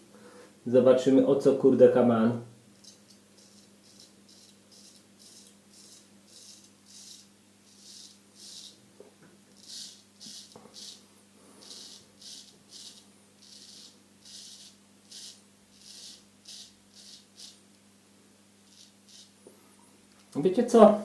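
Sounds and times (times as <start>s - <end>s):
razor scraping stubble: 2.8s - 8.8s, 9.6s - 11.0s, 11.6s - 17.6s, 18.7s - 19.4s.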